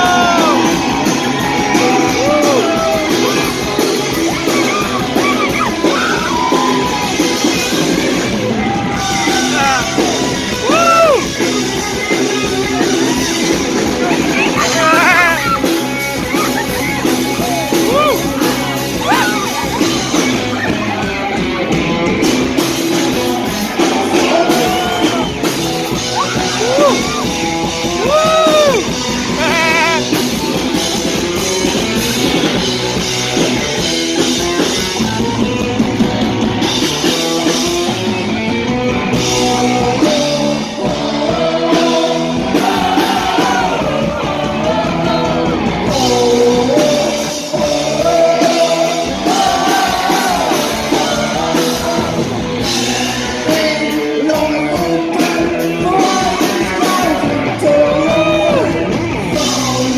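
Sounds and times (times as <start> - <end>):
bass guitar: 0.0 - 59.9
distorted electric guitars: 0.0 - 59.9
drums: 0.0 - 59.9
person singing: 8.4 - 11.5, 26.1 - 30.2, 39.1 - 59.9.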